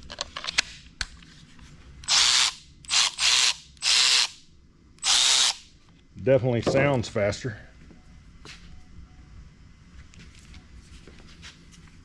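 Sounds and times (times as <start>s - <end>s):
cordless ratchet spinning: 2.0s - 4.4s.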